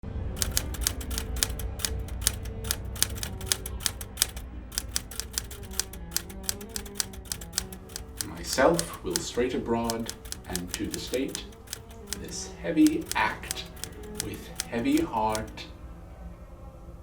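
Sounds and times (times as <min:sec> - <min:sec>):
typewriter keys clacking: 0:00.4 - 0:15.6.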